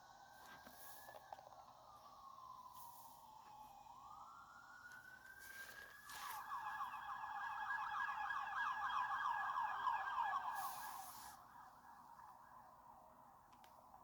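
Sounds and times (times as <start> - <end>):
electronic siren wailing and yelping: 5.8 - 13.0.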